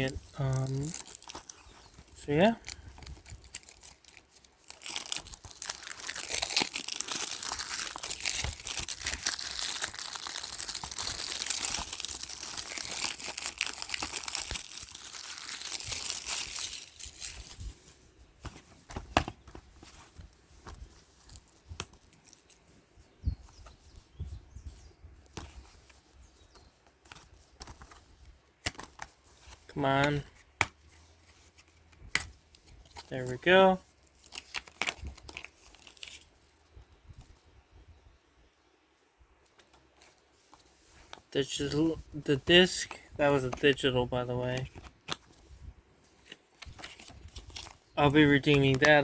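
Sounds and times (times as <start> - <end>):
plastic shrink-wrap tearing: 0.0 - 17.7, 34.1 - 36.3.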